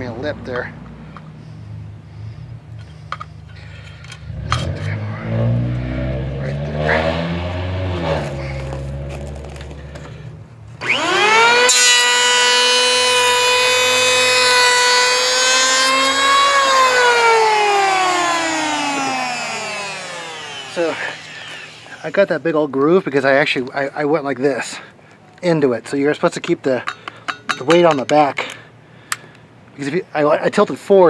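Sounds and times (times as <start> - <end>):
electric planer motor whine: 10.8 - 22.2
planer cutting hiss: 10.8 - 22.2.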